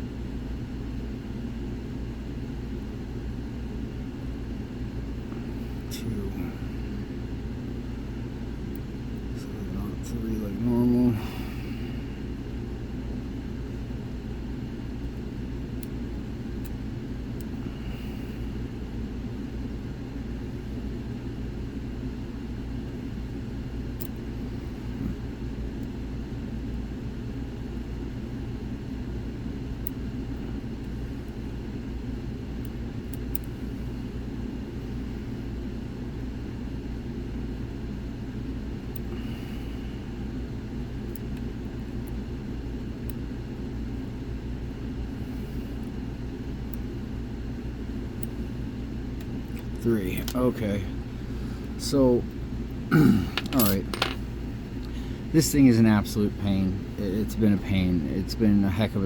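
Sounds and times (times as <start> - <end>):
steady low hum: 0.0 - 59.0
lock picks clicking: 53.4 - 54.2.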